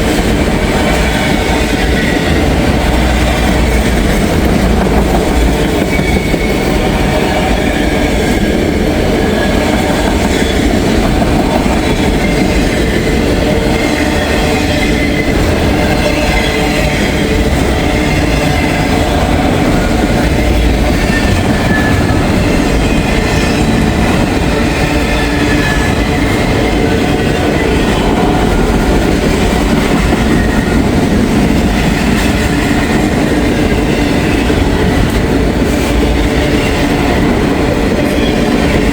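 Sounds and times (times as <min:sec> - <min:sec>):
freight train rumbling on track: 0:00.0 - 0:38.9
wheels clickety-clack: 0:00.0 - 0:38.9
high wheel squeals: 0:01.2 - 0:11.0, 0:11.7 - 0:28.8.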